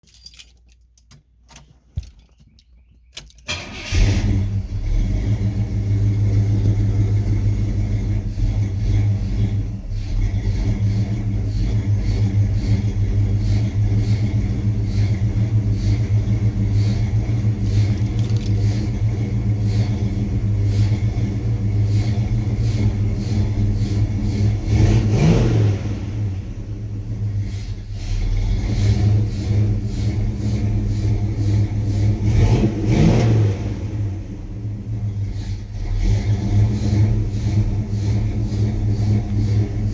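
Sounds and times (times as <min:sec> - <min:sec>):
engine revving: 0:03.5 - 0:39.9
engine idling unevenly: 0:05.2 - 0:24.8, 0:34.4 - 0:39.9
key clicks: 0:17.7 - 0:18.7.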